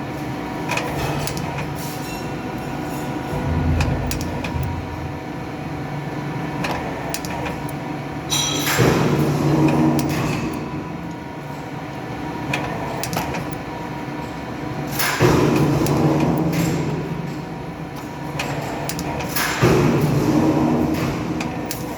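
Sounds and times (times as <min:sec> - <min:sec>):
steady motor hum: 0:03.3 - 0:05.8.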